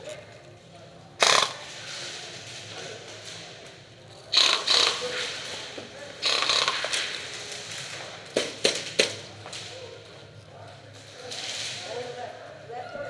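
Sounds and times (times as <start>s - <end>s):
airsoft guns firing: 1.2s - 1.9s, 6.2s - 7.3s, 8.3s - 9.3s.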